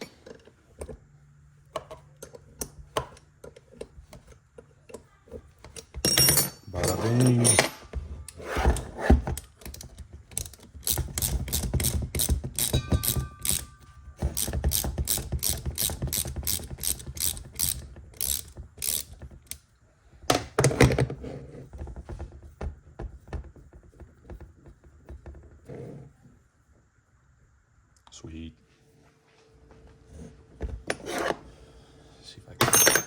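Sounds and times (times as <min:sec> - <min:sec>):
ratchet wrench clicking: 0:10.4 - 0:13.7, 0:14.4 - 0:19.6
metal clatter: 0:12.6 - 0:14.0.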